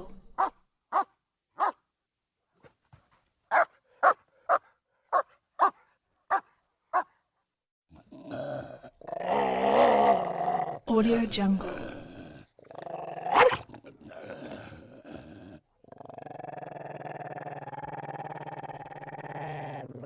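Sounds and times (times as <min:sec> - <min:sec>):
dog barking: 0:00.4 - 0:01.8, 0:03.5 - 0:07.2, 0:13.3 - 0:13.7
dog growling: 0:07.9 - 0:10.9, 0:11.5 - 0:20.0.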